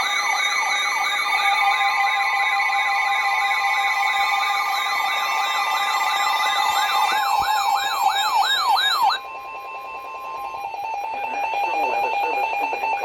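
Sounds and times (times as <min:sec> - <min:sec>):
warbling electronic siren tone: 0:04.6 - 0:13.0.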